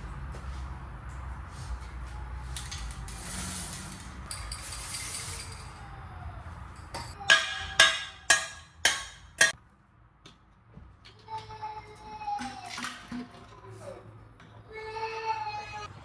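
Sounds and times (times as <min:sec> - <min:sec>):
metal parts clinking: 0:02.5 - 0:05.8
hammer striking steel: 0:06.9 - 0:09.6.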